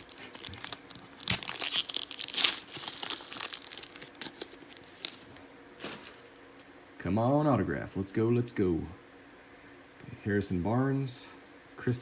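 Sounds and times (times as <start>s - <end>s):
wrapper crinkling and tearing: 0.0s - 6.4s.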